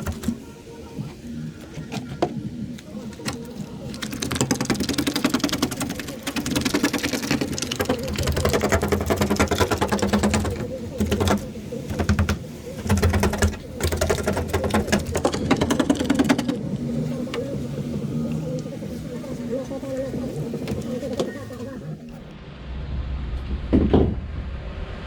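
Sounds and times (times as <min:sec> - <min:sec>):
power tool rattling: 0:03.0 - 0:17.6.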